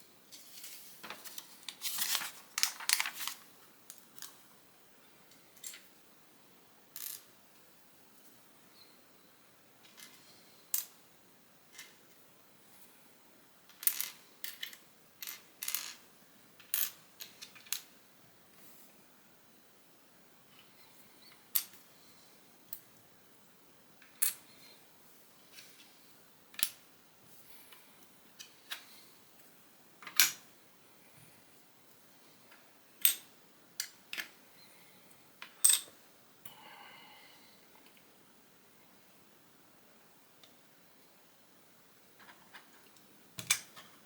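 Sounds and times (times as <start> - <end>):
rustle of plastic pieces: 0.3 - 4.4.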